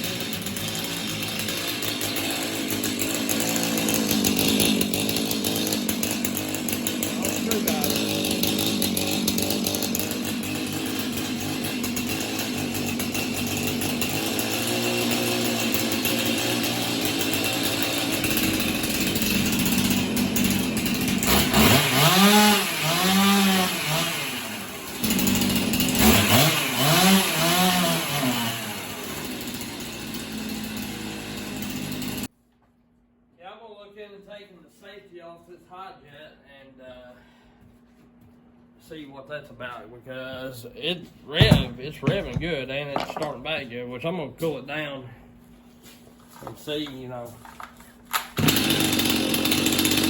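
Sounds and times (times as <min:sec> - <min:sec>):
chainsaw running and revving: 0:00.0 - 0:32.3, 0:48.4 - 0:50.0.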